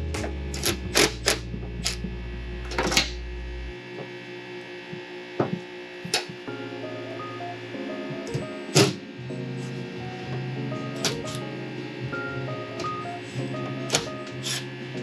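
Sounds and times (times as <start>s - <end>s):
background music with sustained tones: 5.8s - 15.0s.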